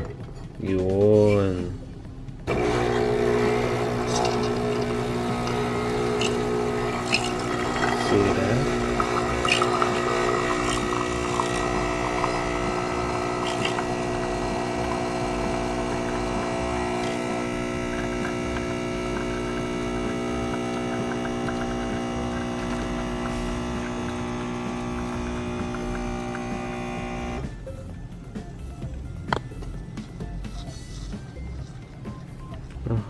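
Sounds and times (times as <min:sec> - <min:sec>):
coffee running into cup: 0:02.5 - 0:27.4
espresso machine pump humming: 0:02.5 - 0:27.5.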